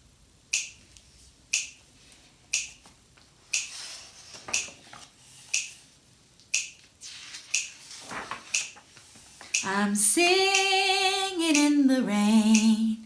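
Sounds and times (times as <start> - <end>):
finger snaps: 10.5 - 10.7, 12.5 - 12.8.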